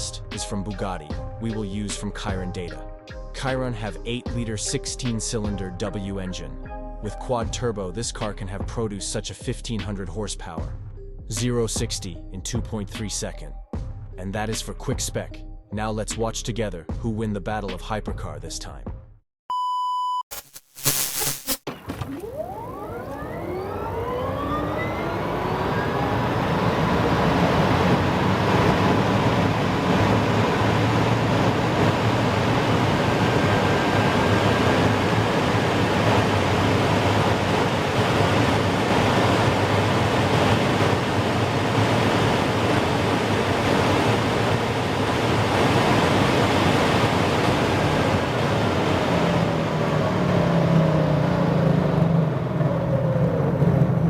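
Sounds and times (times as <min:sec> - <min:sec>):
wind and road noise: 0:23.7 - 0:54.0.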